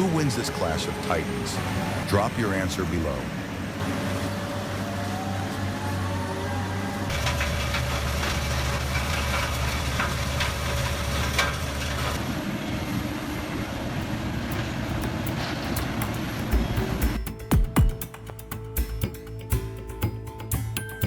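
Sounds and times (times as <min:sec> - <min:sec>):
shredding machinery humming: 0:00.0 - 0:20.8.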